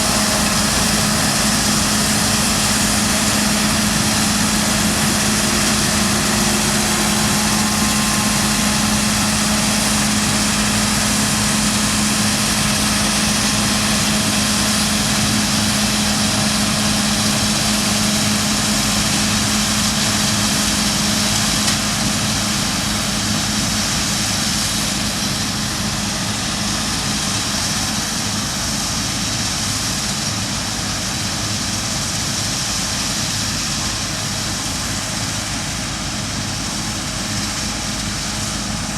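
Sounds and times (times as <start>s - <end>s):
steady low hum: 0.0s - 17.8s
combine harvester running: 0.0s - 38.9s.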